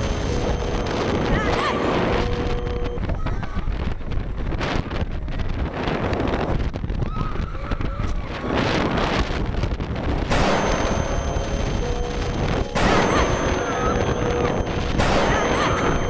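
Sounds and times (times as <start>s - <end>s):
roller coaster rumbling on track: 0.0s - 16.0s
wind on microphone: 0.0s - 16.0s
loud boom sound effect: 10.3s - 16.0s.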